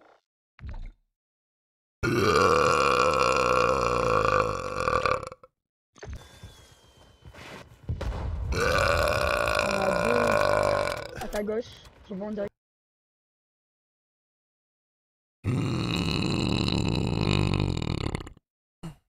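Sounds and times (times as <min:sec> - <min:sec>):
man belching loudly: 0:02.0 - 0:05.5, 0:08.6 - 0:11.3, 0:15.4 - 0:19.0.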